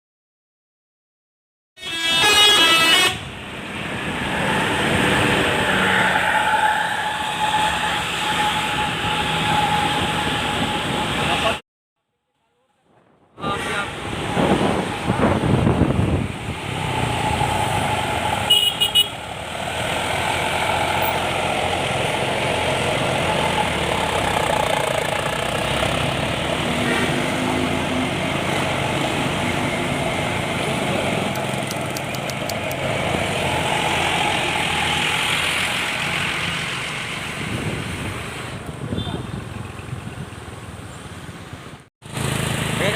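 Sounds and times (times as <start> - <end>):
truck horn blasts: 1.8 - 3.4, 18.4 - 19.3
truck engine and road noise: 1.8 - 11.6, 12.4 - 42.9.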